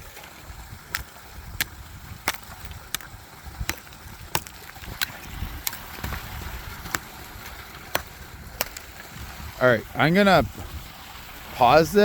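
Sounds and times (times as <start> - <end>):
hammer striking ice: 2.3 - 7.1, 7.8 - 8.9.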